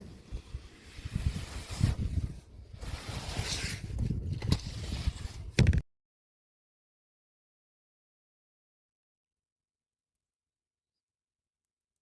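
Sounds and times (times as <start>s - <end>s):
wind gusting over microphone: 0.0s - 5.8s.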